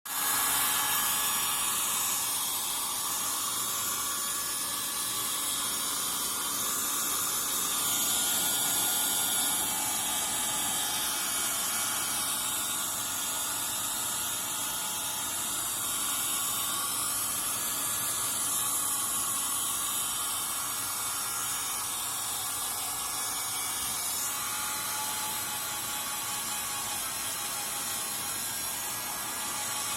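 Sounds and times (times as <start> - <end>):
hair dryer running: 0.1 - 29.9.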